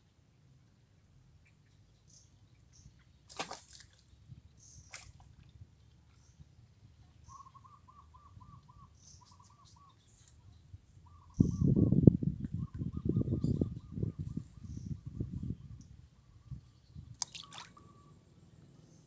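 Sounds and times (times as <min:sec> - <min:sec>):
thin high bird chirps: 0:01.4 - 0:05.3, 0:16.6 - 0:18.2.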